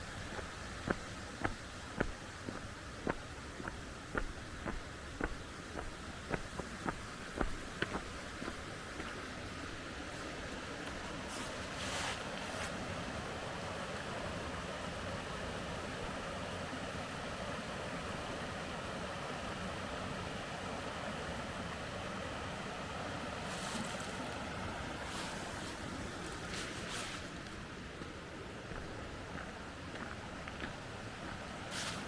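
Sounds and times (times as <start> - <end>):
stream rushing: 0.0 - 32.0
short scuffing sounds: 31.7 - 32.0.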